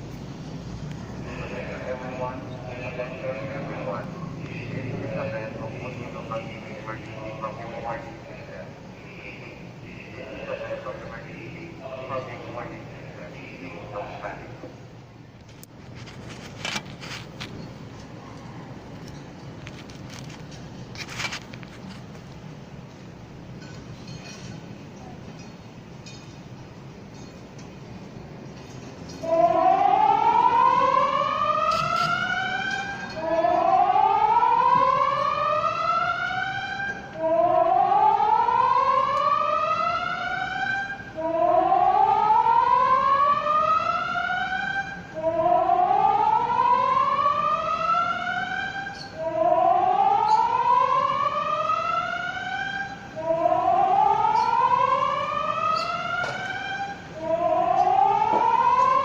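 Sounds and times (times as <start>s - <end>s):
warning siren whooping: 1.0s - 14.6s, 29.1s - 59.0s.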